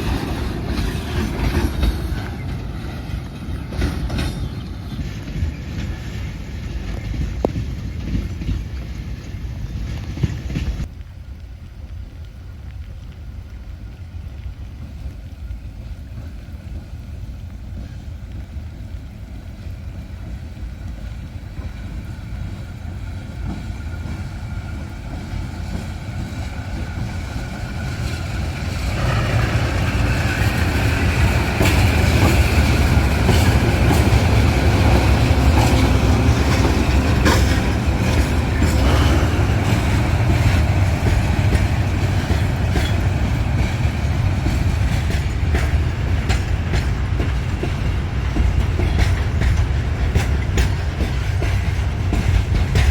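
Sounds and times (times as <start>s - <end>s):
diesel locomotive engine rumble: 0.0s - 52.9s
wheels clicking over rails: 20.2s - 52.9s.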